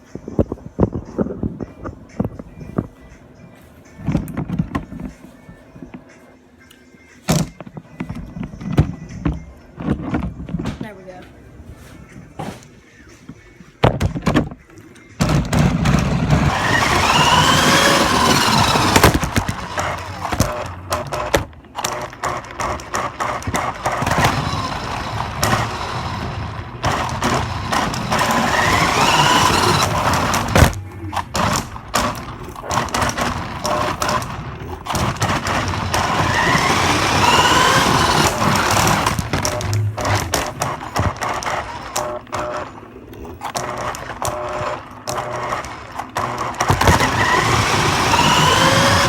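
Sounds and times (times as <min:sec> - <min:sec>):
knocks and thuds on bumps: 0:07.3 - 0:11.4, 0:13.8 - 0:42.6
loud tyre noise: 0:15.2 - 0:49.0
rc car motor whine: 0:15.2 - 0:49.0.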